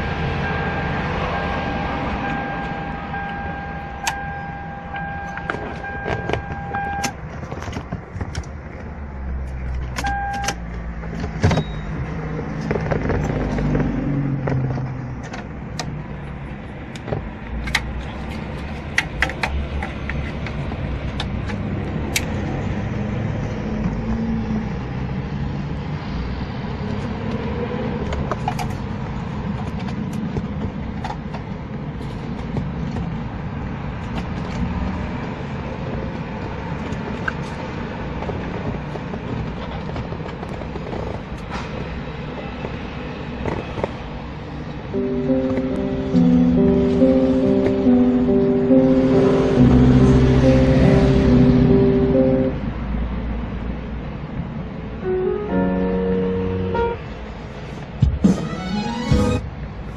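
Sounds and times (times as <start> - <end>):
car engine rumbling: 0.0 - 59.9
electronic beep tone: 0.4 - 7.2, 10.0 - 10.5, 11.5 - 11.9.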